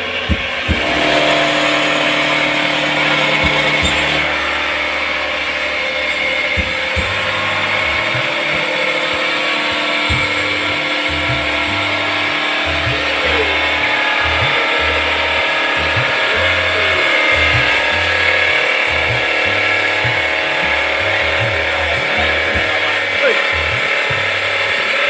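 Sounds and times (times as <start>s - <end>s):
wood cutting hiss: 0.0s - 25.0s
wood lathe humming: 0.0s - 25.0s
short low knocks: 6.5s - 24.6s.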